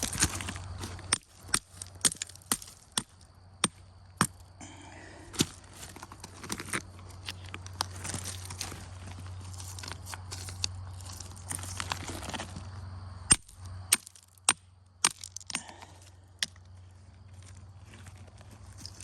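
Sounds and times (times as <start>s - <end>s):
footsteps crunching on gravel: 0.0s - 3.3s, 5.2s - 14.4s, 15.1s - 19.0s
stones striking together: 0.0s - 4.5s, 13.3s - 16.6s.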